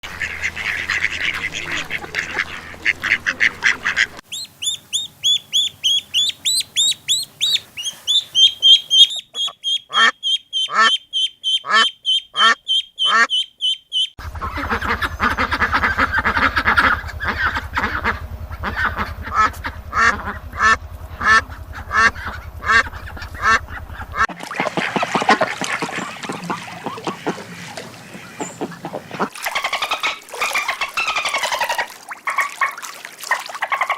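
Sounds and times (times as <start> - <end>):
low hum: 0.0 - 9.4, 14.2 - 31.6
fast rhythmic animal calls: 0.2 - 33.9
animal chattering: 0.3 - 31.9
falling whistled calls: 4.3 - 14.2, 25.0 - 29.2
high repeated chirps: 4.3 - 14.2.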